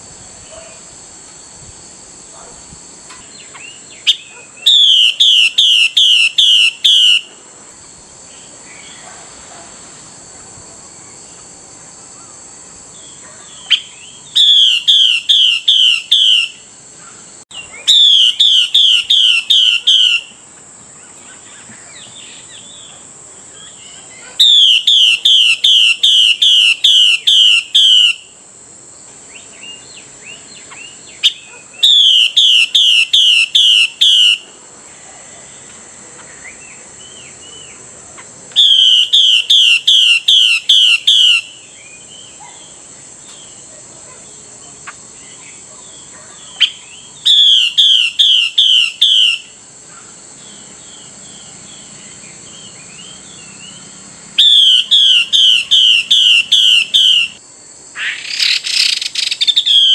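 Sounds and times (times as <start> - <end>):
bird calling down-slurred notes: 54.4 - 57.4.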